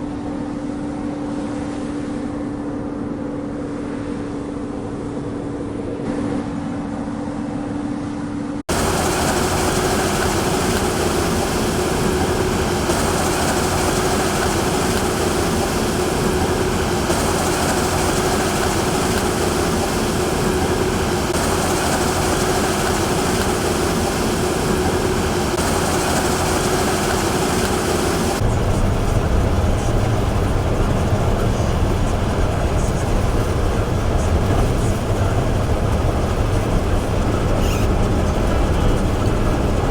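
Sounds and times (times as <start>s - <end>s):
combine harvester running: 8.7s - 39.9s.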